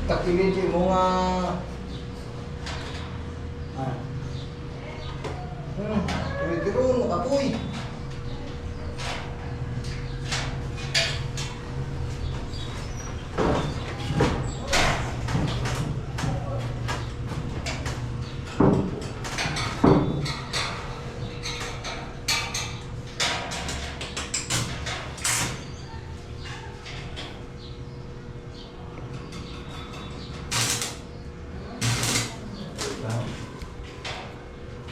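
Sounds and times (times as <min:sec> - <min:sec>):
tools knocking and clattering: 0:13.4 - 0:25.6.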